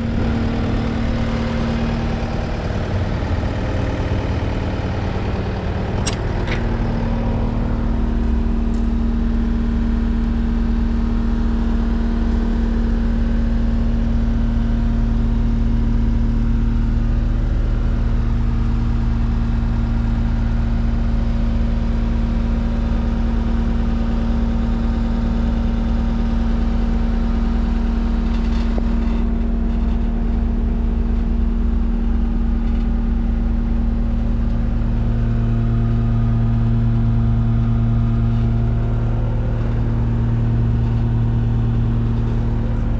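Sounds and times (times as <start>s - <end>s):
diesel engine running steadily: 0.0s - 42.9s
brief clicks: 6.0s - 6.7s.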